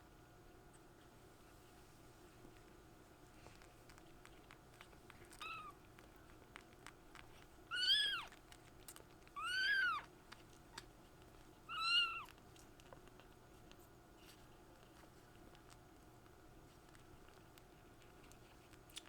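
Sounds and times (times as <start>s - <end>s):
kitten mewing: 5.3s - 5.8s, 7.7s - 8.4s, 9.4s - 10.1s, 11.7s - 12.4s.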